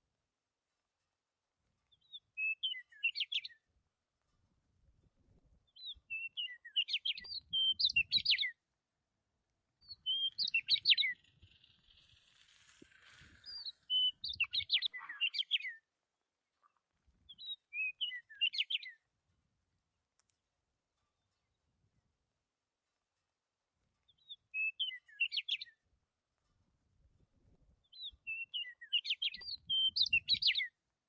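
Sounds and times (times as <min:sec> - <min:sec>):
small bird singing: 0:01.8 - 0:03.7, 0:05.6 - 0:08.6, 0:09.8 - 0:15.9, 0:17.2 - 0:19.1, 0:24.0 - 0:25.9, 0:27.8 - 0:30.8.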